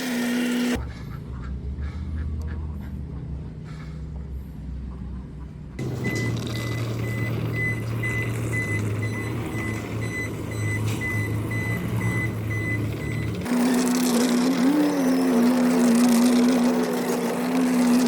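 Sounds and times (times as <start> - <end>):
small electric motor whining: 0.0 - 0.8, 5.8 - 18.0
high beeps: 6.0 - 13.3.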